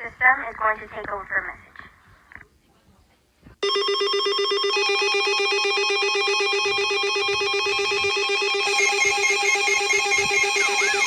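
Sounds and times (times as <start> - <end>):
emergency alert tone: 3.6 - 11.0.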